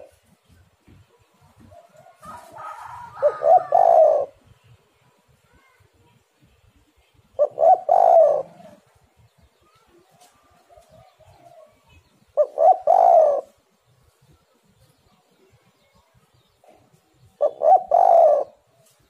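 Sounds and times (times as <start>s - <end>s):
dove cooing: 1.6s - 4.4s, 7.4s - 8.9s, 12.4s - 13.6s, 17.4s - 18.8s.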